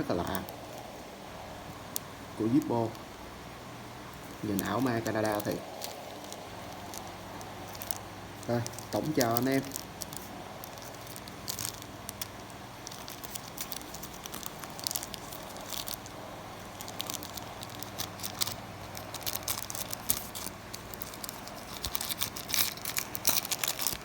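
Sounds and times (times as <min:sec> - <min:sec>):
papers crinkling: 0:04.2 - 0:24.0.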